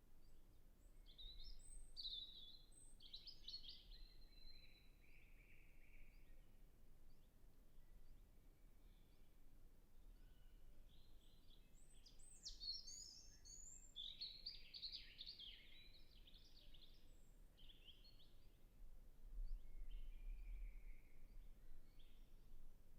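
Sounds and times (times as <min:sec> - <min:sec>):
robin singing faintly: 0:00.0 - 0:22.9.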